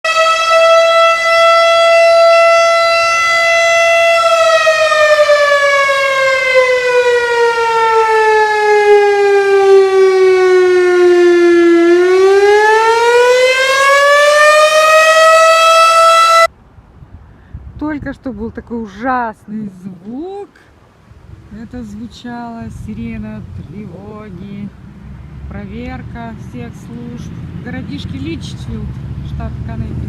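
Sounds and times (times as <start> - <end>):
alarm siren wailing: 0.0 - 16.5.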